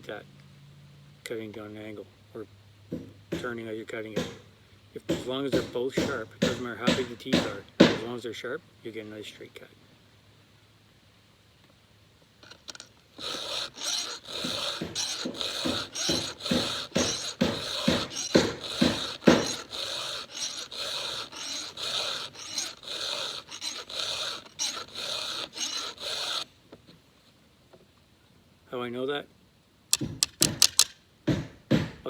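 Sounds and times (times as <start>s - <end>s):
file rasping on saw chain: 12.4s - 26.5s.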